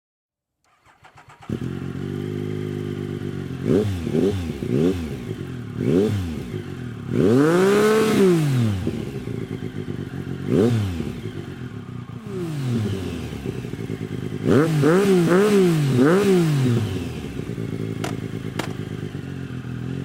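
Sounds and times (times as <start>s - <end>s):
motorcycle starter motor: 0.6s - 2.1s, 17.9s - 19.0s
motorcycle engine revving: 0.6s - 20.0s
motorcycle engine idling: 0.7s - 20.0s.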